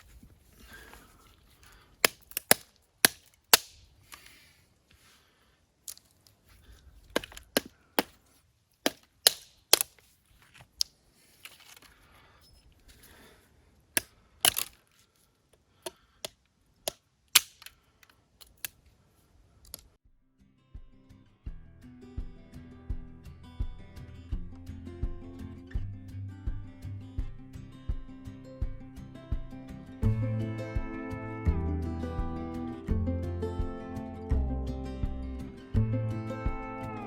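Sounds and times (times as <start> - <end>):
firewood cracking: 0.0 - 4.4, 5.3 - 12.2, 14.0 - 15.2, 15.8 - 17.9.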